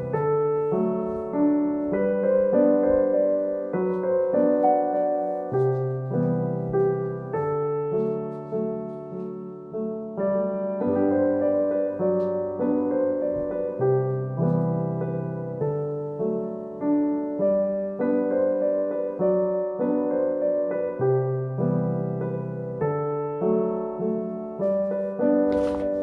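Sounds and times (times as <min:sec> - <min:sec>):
gentle piano melody: 0:00.0 - 0:26.0.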